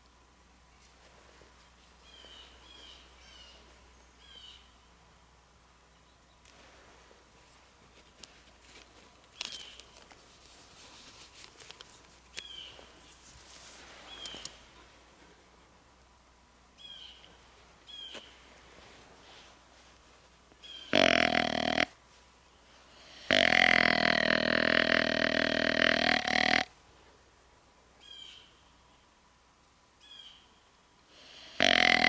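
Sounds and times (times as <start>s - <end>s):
crackling rustles in dry leaves: 6.4s - 15.1s
deer grunt: 20.9s - 22.0s, 23.0s - 26.7s, 31.2s - 32.0s.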